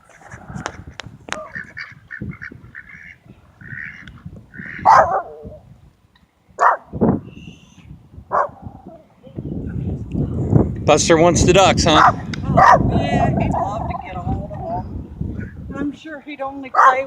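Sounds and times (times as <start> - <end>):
ducks quacking: 0.0 - 5.2.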